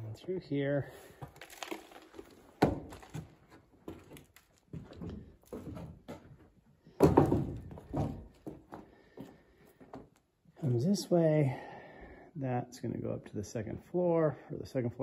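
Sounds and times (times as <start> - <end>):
thumps and scuffs: 2.6 - 10.1.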